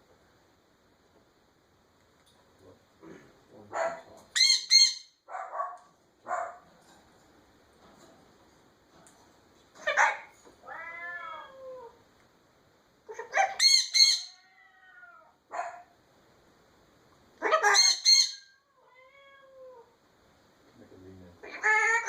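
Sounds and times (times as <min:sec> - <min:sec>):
parrot squawking: 0:03.8 - 0:05.2, 0:13.1 - 0:14.9, 0:17.4 - 0:18.6, 0:21.4 - 0:22.0.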